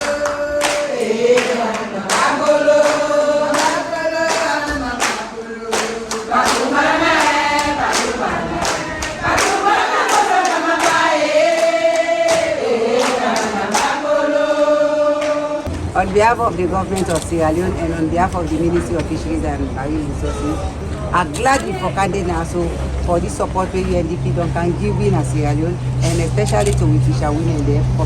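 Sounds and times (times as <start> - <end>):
group of voices singing: 0.0 - 15.9.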